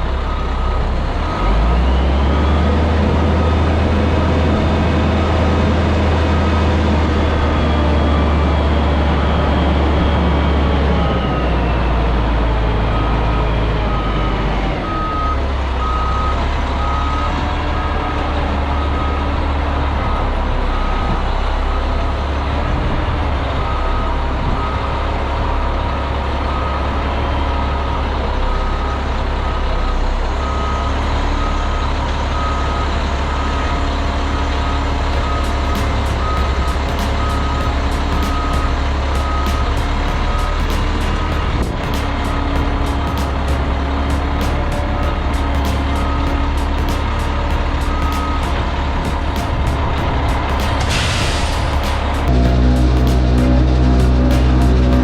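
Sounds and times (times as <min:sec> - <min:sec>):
truck diesel engine running: 0:00.0 - 0:55.0
backup alarm beeping: 0:34.7 - 0:55.0.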